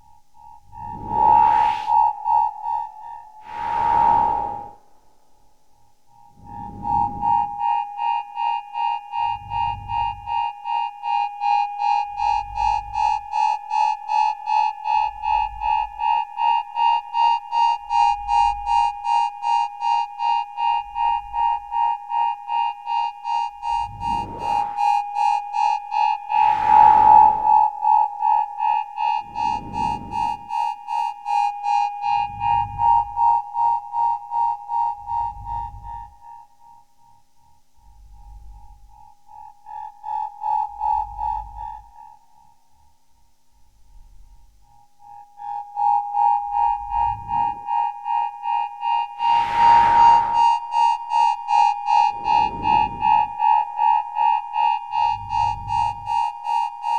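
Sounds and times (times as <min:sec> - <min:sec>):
deep bass pulse: 0:00.7 - 0:02.0, 0:23.7 - 0:25.0, 0:26.3 - 0:27.6, 0:29.2 - 0:30.5, 0:49.2 - 0:50.6, 0:52.1 - 0:53.5
loud noise swell: 0:00.7 - 0:02.3, 0:03.4 - 0:05.0, 0:23.7 - 0:25.2, 0:26.2 - 0:27.8, 0:29.2 - 0:30.5, 0:49.1 - 0:50.7, 0:52.0 - 0:53.5
rising synth sweep: 0:00.7 - 0:02.3, 0:03.4 - 0:05.0, 0:23.7 - 0:25.2, 0:26.2 - 0:27.8, 0:29.2 - 0:30.5, 0:49.2 - 0:50.7, 0:52.0 - 0:53.5.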